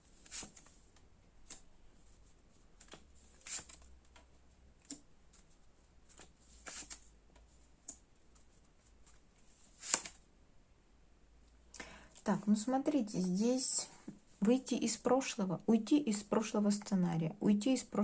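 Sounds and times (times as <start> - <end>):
cards rustling and flicking: 0.1 - 10.2.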